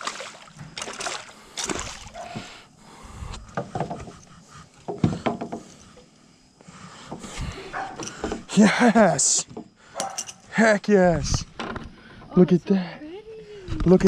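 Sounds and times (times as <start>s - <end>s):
water splashing: 0.0s - 2.6s
knocks and thumps on wooden dock: 3.5s - 4.2s, 4.8s - 5.7s.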